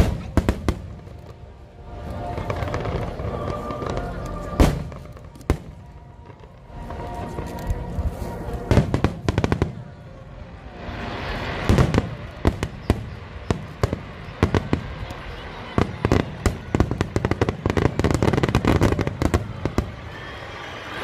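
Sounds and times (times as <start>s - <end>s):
firework bangs: 0.0s - 7.4s, 11.0s - 21.0s
music: 0.0s - 14.5s
crackling firework hiss: 0.0s - 21.0s.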